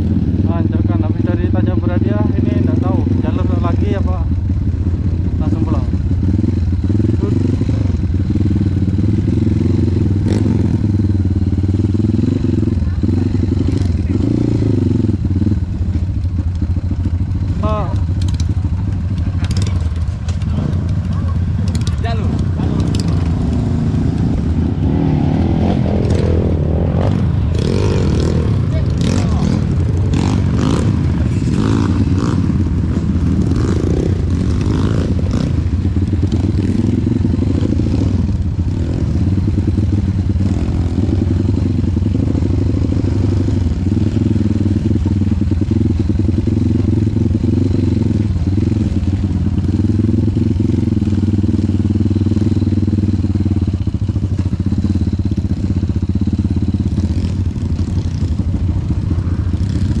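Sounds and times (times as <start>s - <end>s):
motorcycle engine running: 0.0s - 60.0s
knocks and clatters: 17.9s - 24.5s.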